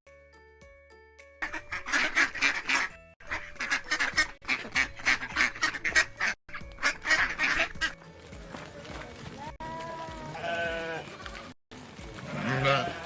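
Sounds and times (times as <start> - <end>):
ducks quacking: 1.4 - 8.0.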